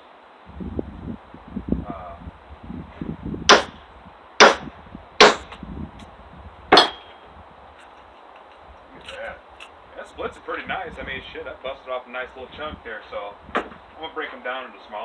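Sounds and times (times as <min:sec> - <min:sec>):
hammer striking metal hatchet: 0:03.5 - 0:03.8, 0:04.4 - 0:05.6, 0:06.7 - 0:07.2
wood knocks and handling: 0:07.8 - 0:09.7, 0:13.5 - 0:13.8.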